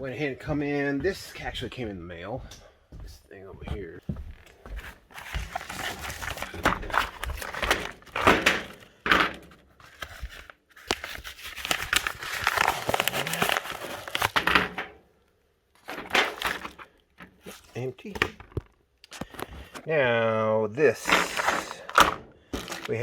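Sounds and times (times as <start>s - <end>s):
packaging crinkling: 5.2s - 9.0s, 9.8s - 14.8s, 21.0s - 23.0s
package tearing open: 5.5s - 8.8s, 9.9s - 14.8s, 21.0s - 23.0s.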